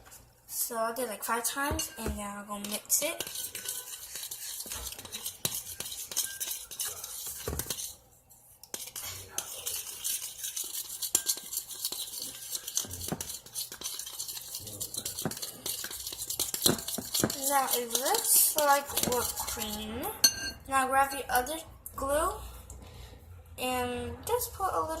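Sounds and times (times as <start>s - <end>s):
utensil clinking against bowl: 1.7s - 8.0s, 8.7s - 21.5s
utensil stirring thick mix in bowl: 1.7s - 8.0s, 8.6s - 21.5s.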